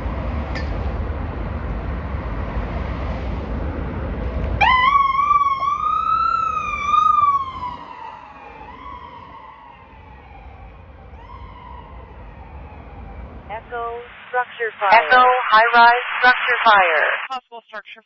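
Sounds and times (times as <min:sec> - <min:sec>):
hand-cranked siren wail: 0:04.6 - 0:13.4.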